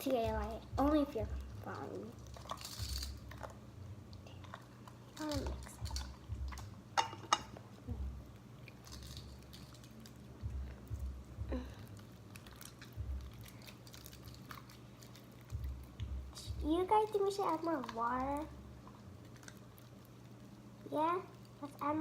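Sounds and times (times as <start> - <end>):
slime squelching and clicking: 17.0 - 20.5.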